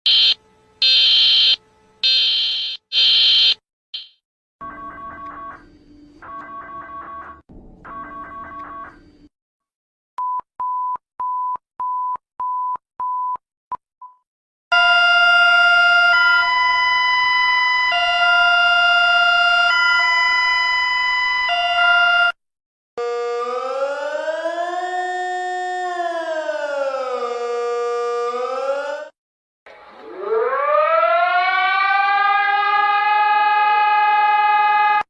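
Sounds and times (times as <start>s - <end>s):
two-chord alarm tones: 0.1s - 9.3s, 14.7s - 22.4s
siren wail rising in pitch: 14.9s - 22.4s, 23.0s - 29.1s, 29.7s - 35.0s.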